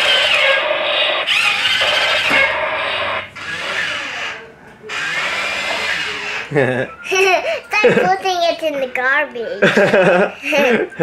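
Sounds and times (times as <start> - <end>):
toy electric motor whirring: 0.0 - 6.6.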